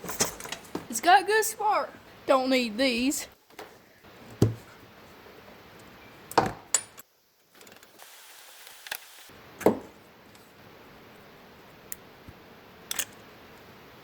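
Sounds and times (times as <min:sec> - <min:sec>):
hand tools and metal clinking: 0:00.0 - 0:01.8, 0:05.9 - 0:07.9.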